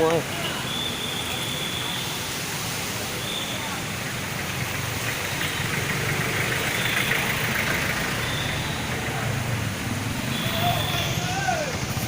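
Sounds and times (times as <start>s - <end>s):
vehicle engine running: 3.8s - 12.0s.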